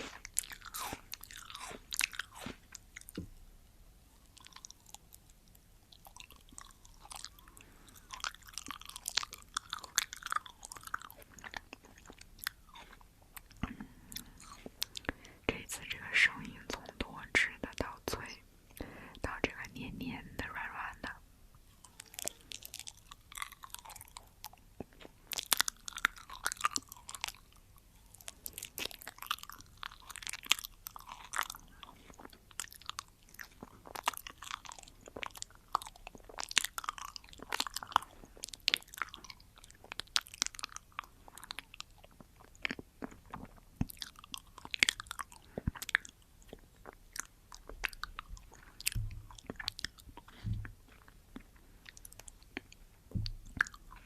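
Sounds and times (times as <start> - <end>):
chewing and biting fruit: 0.0 - 3.4, 4.1 - 15.3, 21.7 - 54.0.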